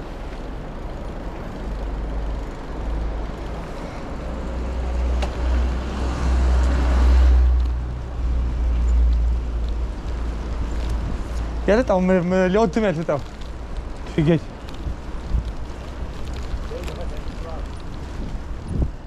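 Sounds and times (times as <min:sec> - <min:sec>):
bicycle road noise: 0:00.0 - 0:19.0
wind buffeting microphone: 0:07.8 - 0:19.0.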